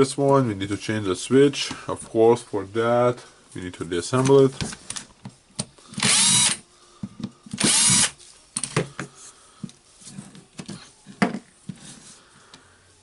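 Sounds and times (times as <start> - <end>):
cordless drill motor spinning: 5.9 - 6.6, 7.5 - 8.2.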